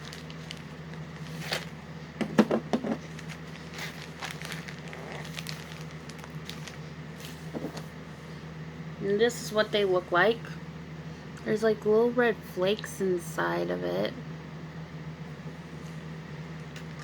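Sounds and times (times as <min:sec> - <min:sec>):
plastic packaging crinkling: 0:00.0 - 0:01.8, 0:03.0 - 0:07.9
steady low hum: 0:00.0 - 0:17.0.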